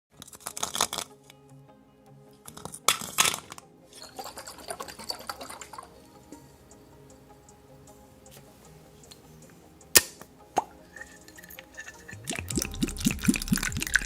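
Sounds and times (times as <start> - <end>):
background music: 0.1 - 14.0
loud liquid slurping: 12.0 - 14.0.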